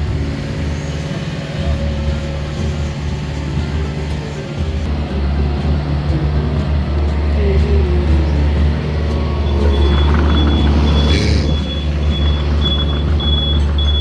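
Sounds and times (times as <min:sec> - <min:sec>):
diesel excavator engine running: 0:00.0 - 0:14.0
reversing alarm beeping: 0:08.1 - 0:14.0.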